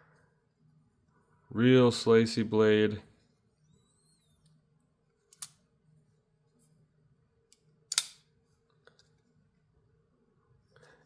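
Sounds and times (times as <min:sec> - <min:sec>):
folding knife blade clicking: 0:07.9 - 0:08.2.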